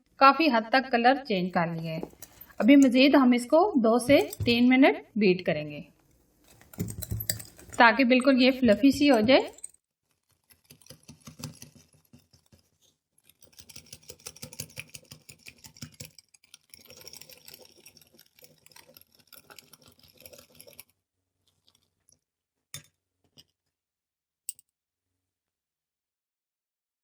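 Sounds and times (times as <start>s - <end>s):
hand beater whisking coffee: 8.6s - 20.9s.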